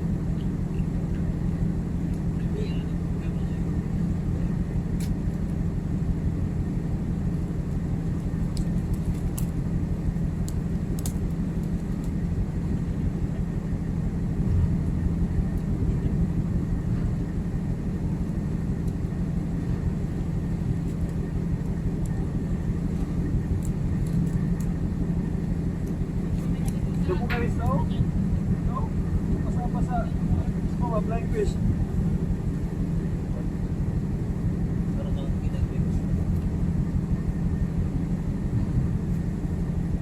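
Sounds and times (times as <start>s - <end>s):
ship machinery droning: 12.2s - 40.0s.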